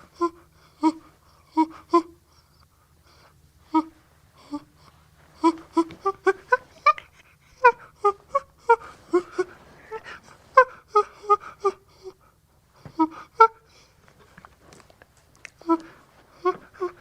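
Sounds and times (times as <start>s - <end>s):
chimpanzee calling: 5.4s - 11.8s, 13.0s - 13.6s.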